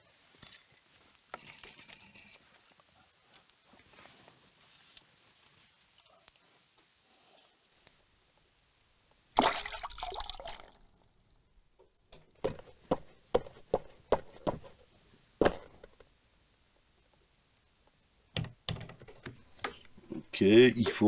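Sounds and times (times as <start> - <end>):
sharp wet slaps: 9.4 - 10.5
water splashing: 9.4 - 11.8.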